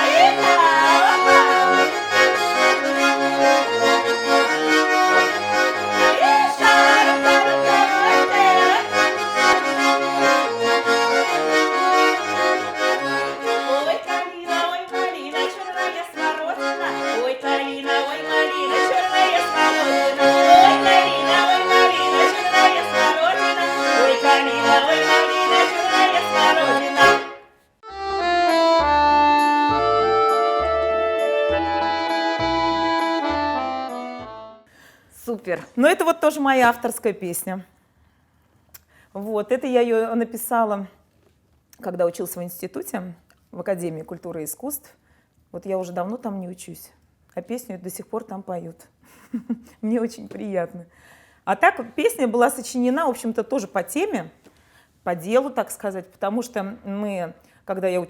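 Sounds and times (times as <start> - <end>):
accordion folk tune: 0.0 - 34.7.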